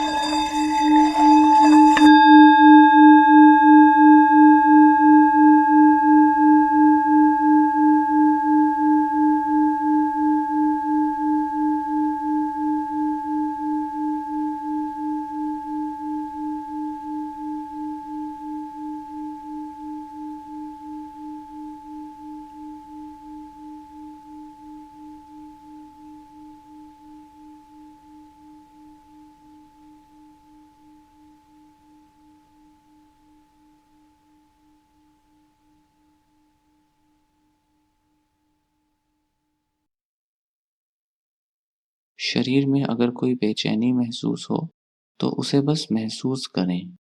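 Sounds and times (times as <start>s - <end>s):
singing bowl rim rubbing: 0.0s - 36.8s
singing bowl ringing hum: 0.0s - 37.8s.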